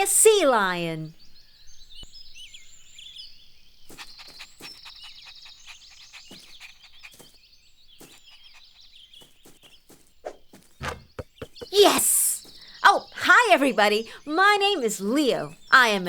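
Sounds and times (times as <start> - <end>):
small birds chirping: 0.0 - 16.0
short soft knocks: 10.8 - 11.7.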